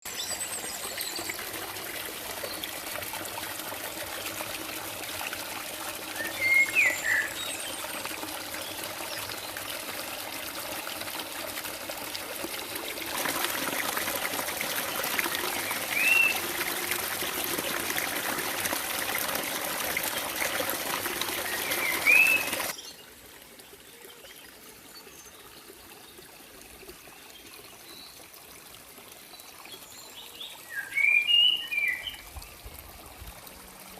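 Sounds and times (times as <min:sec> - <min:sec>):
water trickling: 0:00.1 - 0:33.9.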